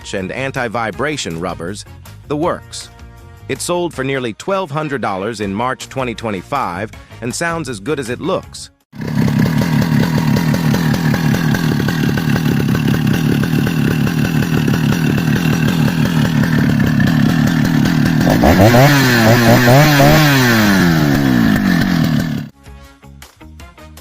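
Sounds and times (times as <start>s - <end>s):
chainsaw engine idling and revving: 9.0s - 22.5s.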